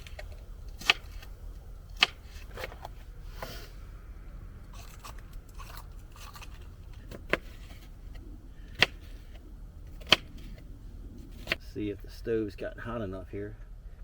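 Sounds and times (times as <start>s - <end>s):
knife slicing onion: 0.0s - 3.6s.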